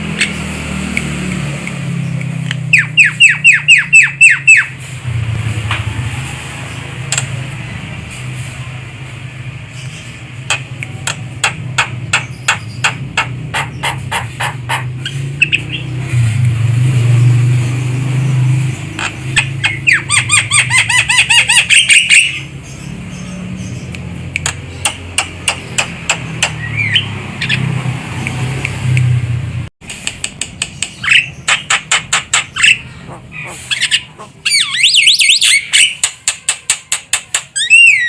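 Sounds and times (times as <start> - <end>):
bird harsh chatter: 9.7 - 15.9, 30.8 - 36.7.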